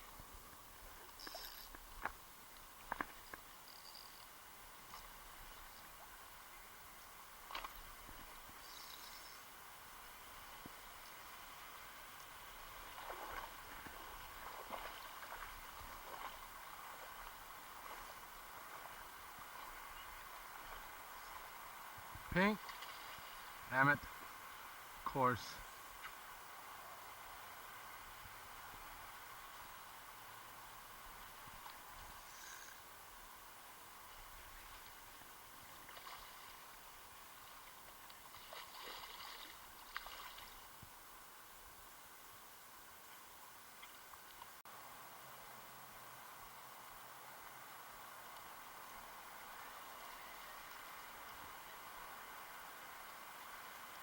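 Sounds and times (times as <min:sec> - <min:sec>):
river water running: 0:00.0 - 0:54.0
water splashing and gurgling: 0:35.7 - 0:36.9, 0:37.5 - 0:40.7.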